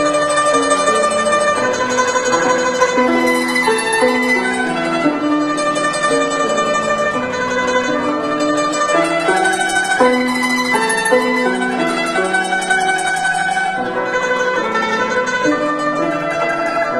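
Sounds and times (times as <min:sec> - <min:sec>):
guzheng tremolo melody: 0:00.0 - 0:16.9.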